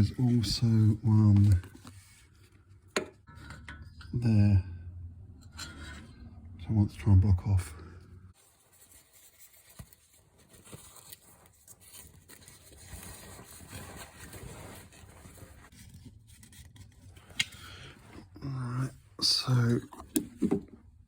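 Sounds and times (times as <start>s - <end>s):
hands rustling insulation pad: 8.4s - 15.8s.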